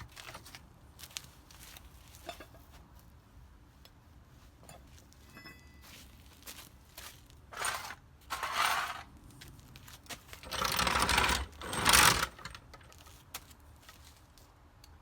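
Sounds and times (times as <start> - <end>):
metal jack clattering and scraping: 2.2 - 2.7, 7.5 - 9.1, 10.3 - 13.1.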